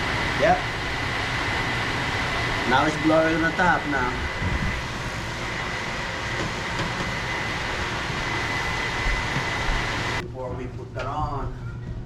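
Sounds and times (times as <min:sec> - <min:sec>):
microwave vent fan running: 0:00.0 - 0:12.0.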